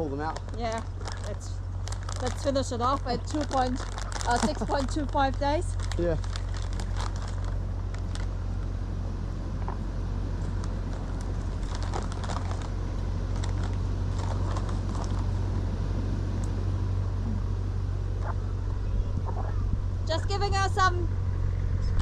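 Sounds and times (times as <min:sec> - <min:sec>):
low mechanical rumble: 0:00.0 - 0:22.0.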